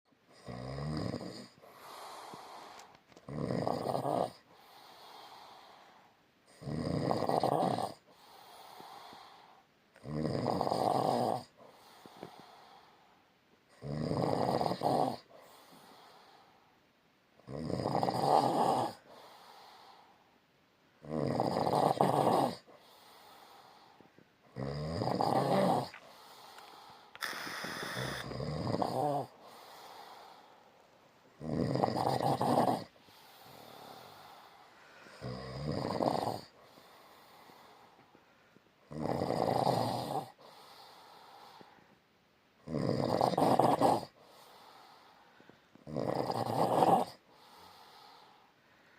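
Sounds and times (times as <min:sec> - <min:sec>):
person snoring: 0:00.3 - 0:05.8, 0:06.5 - 0:12.4, 0:13.7 - 0:16.2, 0:17.5 - 0:19.2, 0:21.0 - 0:30.6, 0:31.4 - 0:37.9, 0:38.9 - 0:41.7, 0:42.6 - 0:45.0, 0:45.8 - 0:48.4
faint breathing: 0:01.5 - 0:03.2, 0:04.4 - 0:06.3, 0:08.1 - 0:09.8, 0:11.6 - 0:13.3, 0:15.3 - 0:16.8, 0:19.0 - 0:20.5, 0:22.6 - 0:24.4, 0:25.5 - 0:31.3, 0:32.8 - 0:35.5, 0:36.4 - 0:38.8, 0:40.3 - 0:42.1, 0:44.1 - 0:45.8, 0:47.2 - 0:48.9.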